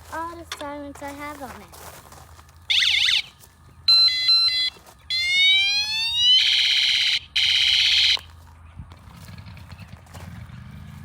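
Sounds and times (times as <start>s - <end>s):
electronic siren tones: 2.7s - 8.4s.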